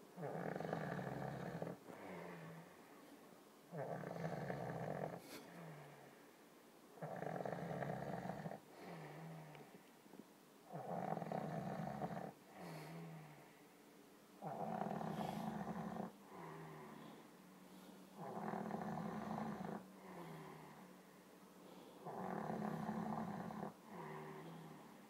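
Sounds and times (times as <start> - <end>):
monkey snoring: 0.2 - 2.8, 3.7 - 6.1, 7.0 - 9.6, 10.7 - 13.4, 14.4 - 17.3, 18.1 - 20.9, 21.8 - 25.0.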